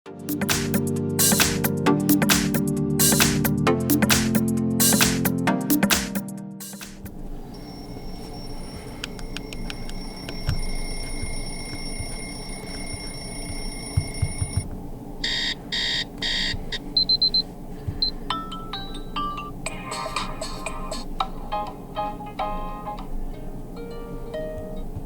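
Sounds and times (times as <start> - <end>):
alarm clock beeping: 7.5 - 14.6, 15.2 - 21.1
phone alarm high ringing: 7.5 - 14.6, 15.2 - 20.6.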